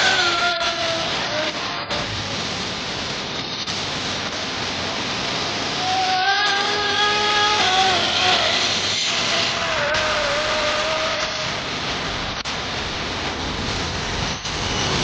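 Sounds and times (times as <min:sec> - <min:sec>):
small engine whining at high revs: 0:00.0 - 0:02.0, 0:05.8 - 0:11.7
steady hiss: 0:00.0 - 0:15.0.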